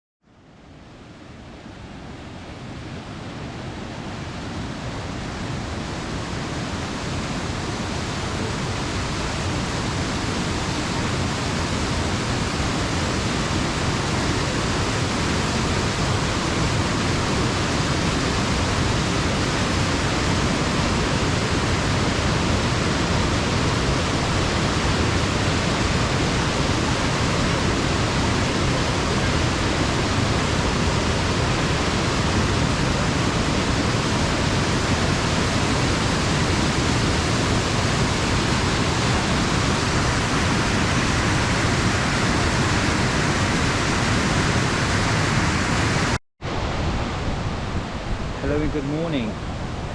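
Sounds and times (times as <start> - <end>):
waterfall roar: 0.6 - 49.9.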